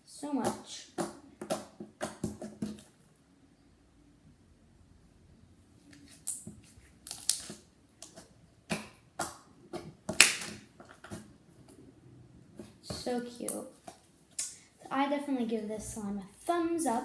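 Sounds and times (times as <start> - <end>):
slime clicking and popping: 7.0 - 9.4, 10.1 - 10.7.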